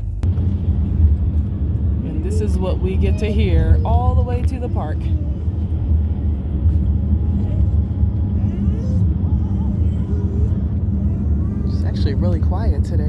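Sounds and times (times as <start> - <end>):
car road and engine rumble: 0.0 - 13.0
dog whining: 2.4 - 12.3.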